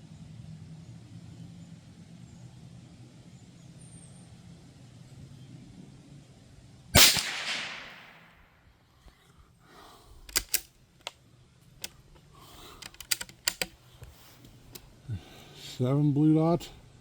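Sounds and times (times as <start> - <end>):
rifle bolt clicks: 7.0 - 8.4, 10.2 - 10.7, 12.7 - 13.8
rifle shot ringing: 7.0 - 8.5.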